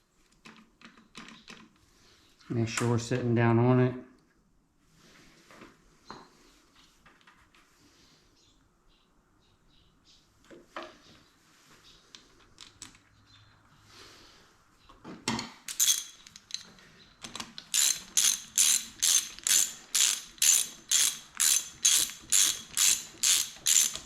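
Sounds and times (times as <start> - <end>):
ratchet wrench clicking: 15.7 - 16.6, 17.7 - 24.0.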